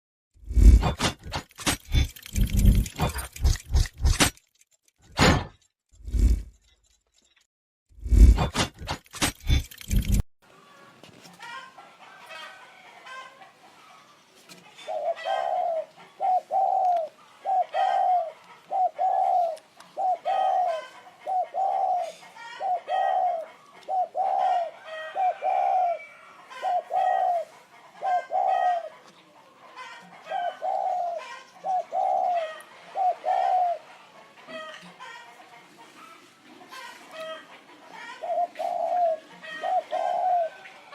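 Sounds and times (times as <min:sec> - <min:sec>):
dove cooing: 0:14.7 - 0:40.9.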